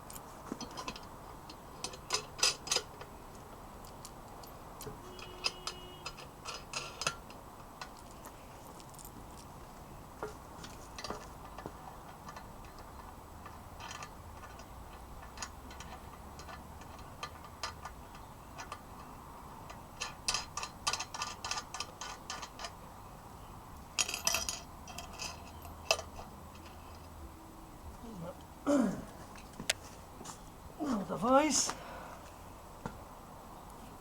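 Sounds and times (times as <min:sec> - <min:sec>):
metal parts clicking and tapping: 0:00.1 - 0:09.5, 0:10.2 - 0:22.8, 0:24.0 - 0:27.2.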